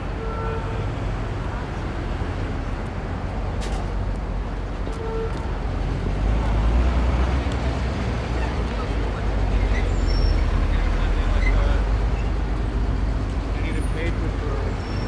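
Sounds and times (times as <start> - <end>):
street traffic: 0.0 - 15.0
large vehicle rumbling by: 5.5 - 15.0.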